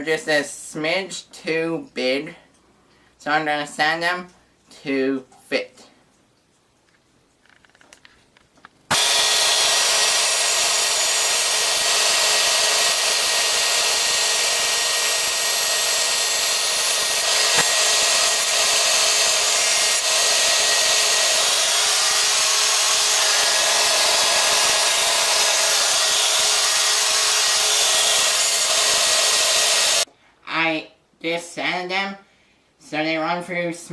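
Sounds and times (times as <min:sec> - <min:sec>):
electric power sander running: 0:08.9 - 0:30.1.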